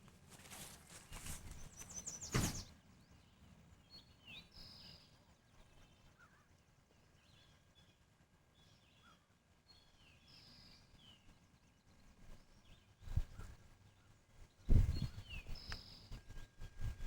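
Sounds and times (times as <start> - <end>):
knocks and rustles: 0.0 - 2.7
small birds chirping: 0.0 - 8.0, 8.6 - 17.0
thump: 2.3 - 2.7.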